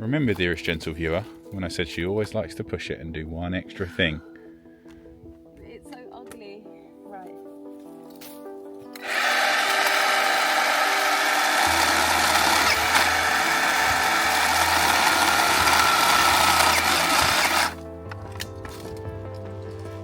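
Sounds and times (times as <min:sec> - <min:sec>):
light background music: 0:00.0 - 0:20.0
electric chainsaw cutting wood: 0:09.0 - 0:17.8.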